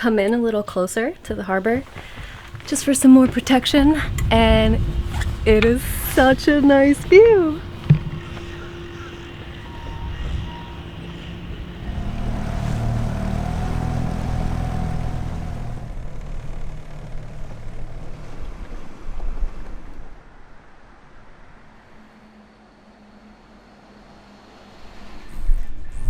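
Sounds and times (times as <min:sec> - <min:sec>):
boat engine running: 0:00.0 - 0:20.2
faint whine: 0:00.0 - 0:26.0.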